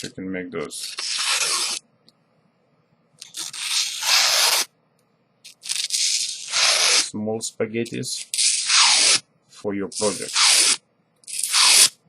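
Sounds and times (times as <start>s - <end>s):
knife slicing paper: 0.8s - 1.8s, 3.3s - 4.7s, 5.5s - 7.1s, 8.2s - 9.2s, 10.0s - 12.0s.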